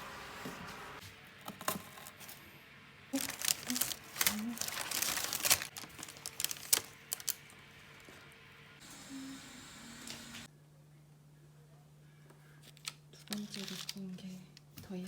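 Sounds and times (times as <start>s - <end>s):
crinkly material rustling: 3.1s - 7.5s, 12.6s - 15.0s.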